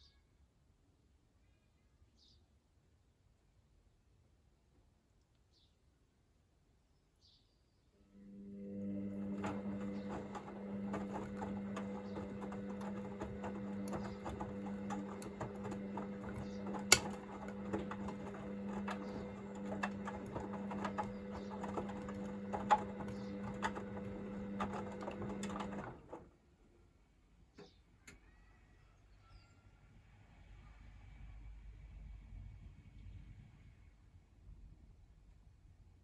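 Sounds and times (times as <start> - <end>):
washing machine drum humming: 8.3 - 26.3
laundry clicking and knocking: 9.2 - 26.2.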